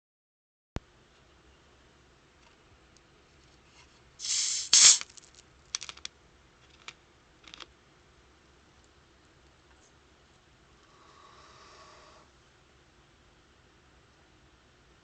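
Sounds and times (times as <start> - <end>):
carbonation hiss: 4.2 - 5.2
container handling clicks: 4.2 - 6.1.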